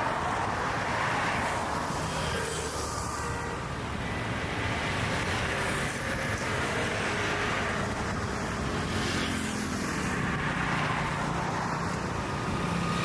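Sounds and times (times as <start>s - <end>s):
vehicles passing: 0.0s - 13.0s.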